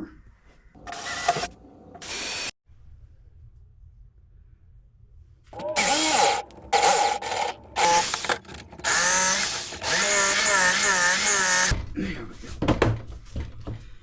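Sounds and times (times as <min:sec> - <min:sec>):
power drill whining: 0:00.8 - 0:02.6, 0:05.6 - 0:11.8.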